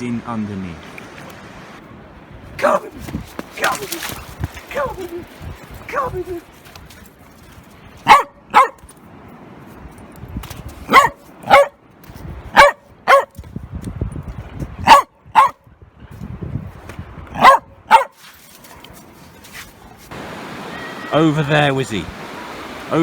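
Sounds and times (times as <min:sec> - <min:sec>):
dog barking: 0:08.0 - 0:08.8, 0:10.9 - 0:11.8, 0:12.5 - 0:13.4, 0:14.8 - 0:15.6, 0:17.4 - 0:18.2.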